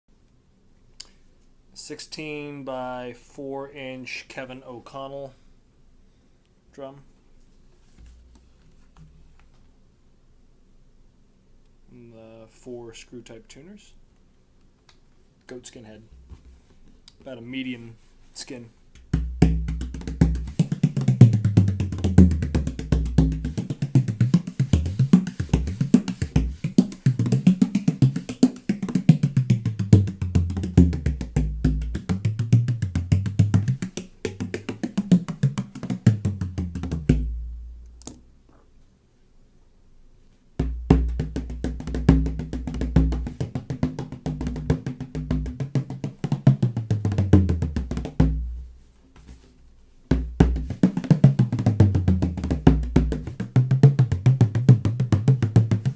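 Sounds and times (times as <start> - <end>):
frame drum beaten in fast rhythm: 19.2 - 37.4, 40.6 - 48.5, 50.1 - 55.9.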